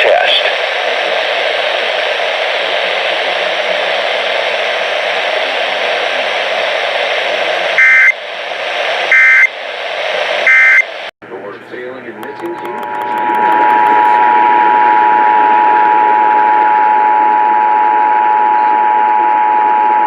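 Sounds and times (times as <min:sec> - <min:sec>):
radio static hiss: 0:00.0 - 0:16.2
short loud data bursts: 0:07.8 - 0:08.2, 0:09.1 - 0:09.5, 0:10.4 - 0:10.9.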